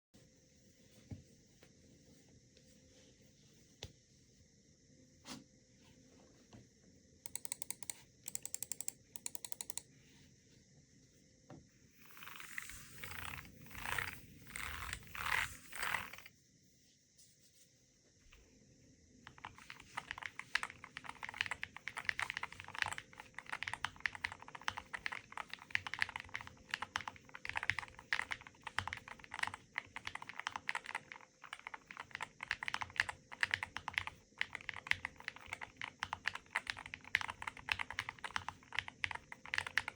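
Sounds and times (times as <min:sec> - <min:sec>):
keyboard typing: 0:07.3 - 0:09.8, 0:12.0 - 0:16.3, 0:19.3 - 0:39.9.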